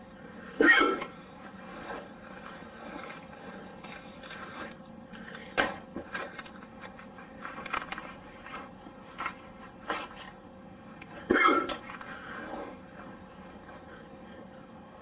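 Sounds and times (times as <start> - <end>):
man hiccuping: 0.6 - 1.1, 11.3 - 11.8.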